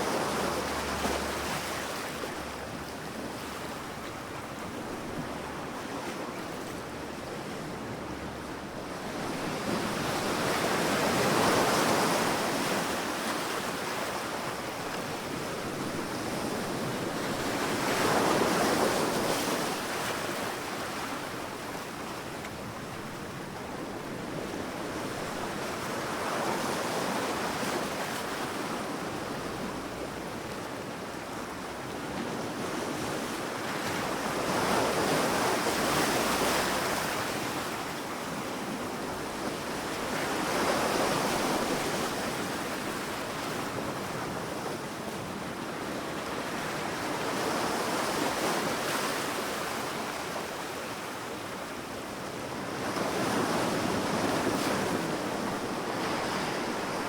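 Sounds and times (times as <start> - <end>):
sea waves breaking on a beach: 0.0 - 57.0.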